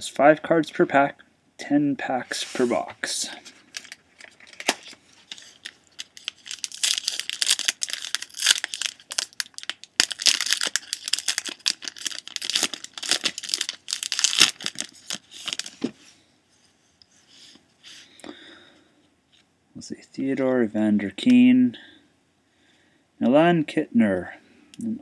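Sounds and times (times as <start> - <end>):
card pack wrapper tearing and crinkling: 3.7 - 15.9.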